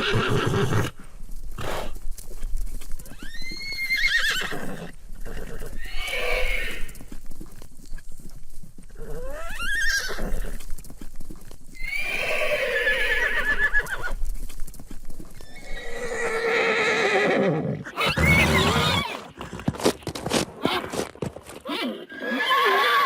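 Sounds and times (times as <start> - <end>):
horse neighing: 0.0 - 1.0, 3.2 - 6.9, 11.8 - 14.0, 15.4 - 19.4, 21.6 - 23.0.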